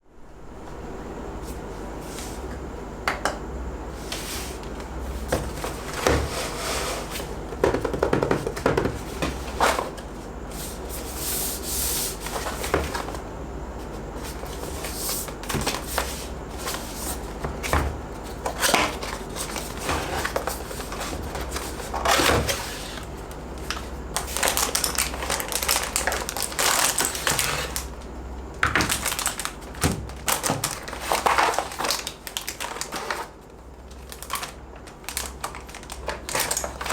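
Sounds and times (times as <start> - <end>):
steady low hum: 0.0 - 36.9
box knocks and clicks: 7.6 - 9.4
packaging rustling: 18.3 - 28.0, 28.7 - 36.9.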